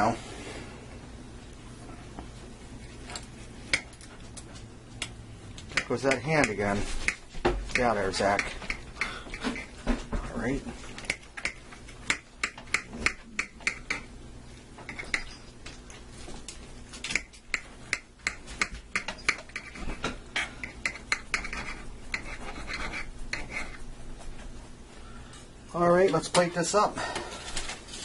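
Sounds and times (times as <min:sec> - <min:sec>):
knife sawing through meat: 0:21.4 - 0:23.8.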